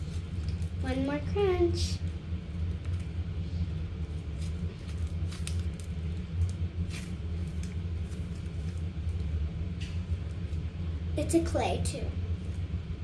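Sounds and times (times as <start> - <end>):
steady low rumble: 0.0 - 13.0
slime squeezed and crackling: 4.1 - 9.3.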